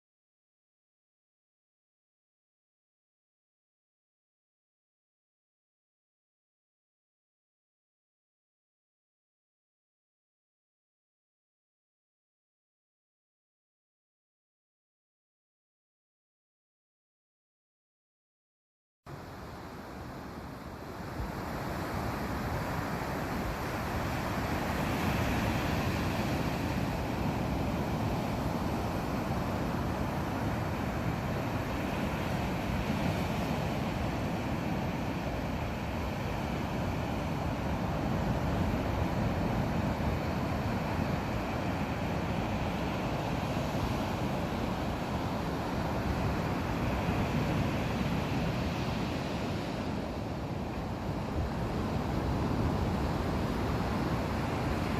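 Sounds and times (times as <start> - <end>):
sea surf breaking on a beach: 19.1 - 54.9.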